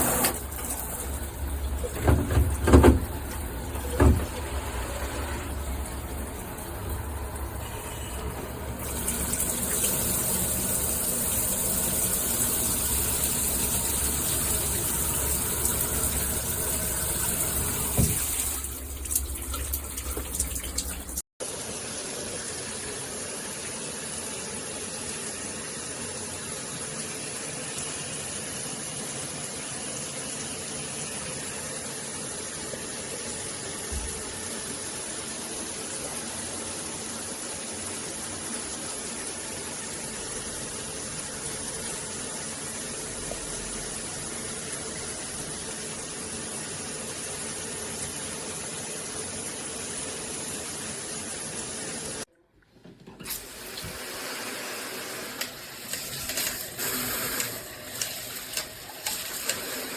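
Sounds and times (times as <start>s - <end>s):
water spraying from shower head: 53.2s - 59.9s.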